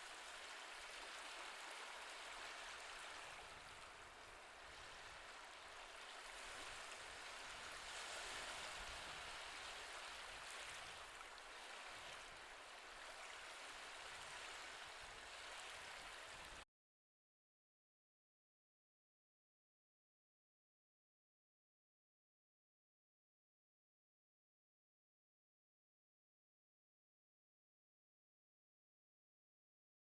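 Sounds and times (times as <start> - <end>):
faint ocean waves: 0.0 - 16.6.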